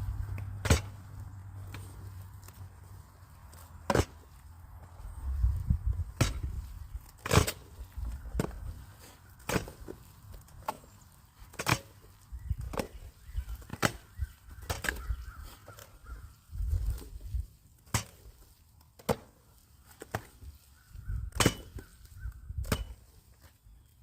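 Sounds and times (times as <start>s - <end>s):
hand tool striking: 21.4s - 21.9s.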